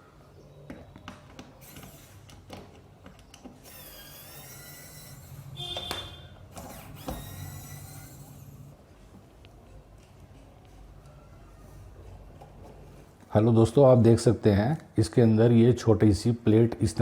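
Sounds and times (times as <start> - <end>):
brief squeak: 3.7 - 8.6.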